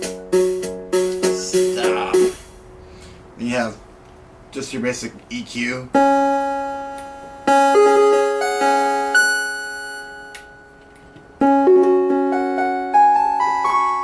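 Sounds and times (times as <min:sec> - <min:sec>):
electronic keyboard playing chords: 0:00.0 - 0:03.0, 0:05.8 - 0:14.0
single keyboard notes: 0:05.9 - 0:14.0.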